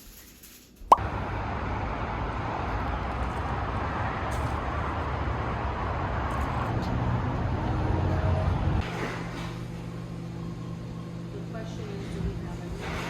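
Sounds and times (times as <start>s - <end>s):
car road noise: 1.0s - 8.9s.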